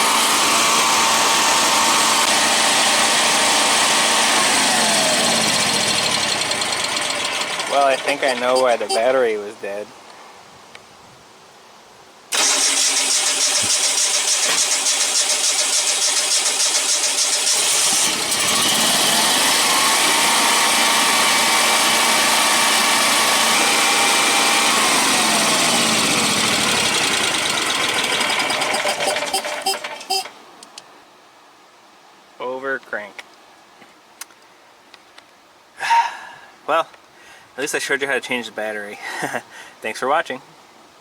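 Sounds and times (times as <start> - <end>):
generator starter cranking: 0.0 - 9.1, 12.3 - 30.4.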